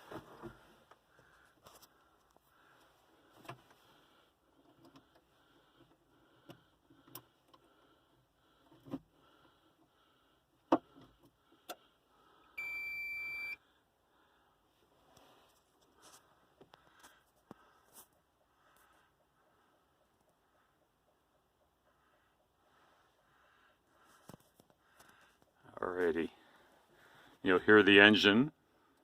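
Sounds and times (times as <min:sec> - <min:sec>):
warning buzzer beep: 0:12.6 - 0:13.6.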